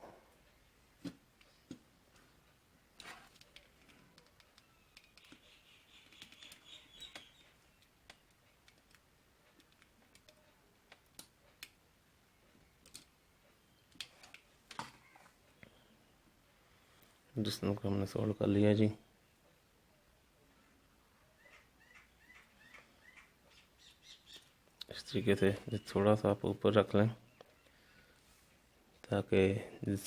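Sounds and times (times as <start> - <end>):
small tools clicking and tapping: 12.8 - 13.2.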